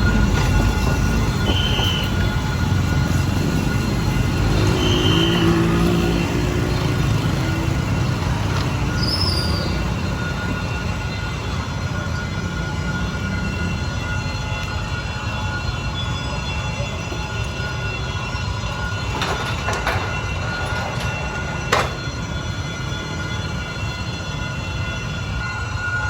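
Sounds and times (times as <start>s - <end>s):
high squeal: 8.5s - 11.0s
locomotive low rumble: 16.7s - 22.8s.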